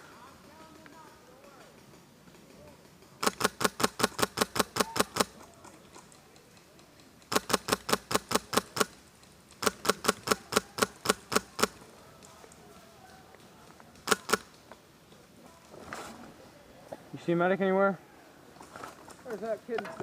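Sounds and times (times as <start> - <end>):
airsoft rifle rapid shots: 3.2 - 5.4, 7.3 - 9.0, 9.6 - 11.8, 14.0 - 14.5.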